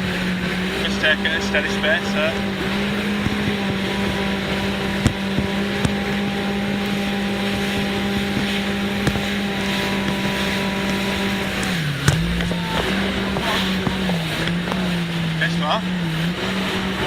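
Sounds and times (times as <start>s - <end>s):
jet ski engine running: 0.0s - 17.0s
brief knocks: 7.8s - 14.9s.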